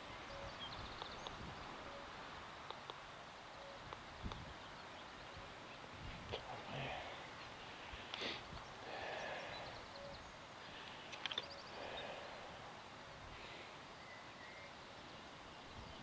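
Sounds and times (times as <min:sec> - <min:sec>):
distant bird chirps: 0:00.0 - 0:16.0
faint wind: 0:00.0 - 0:16.0
small sharp clicks: 0:10.9 - 0:11.5.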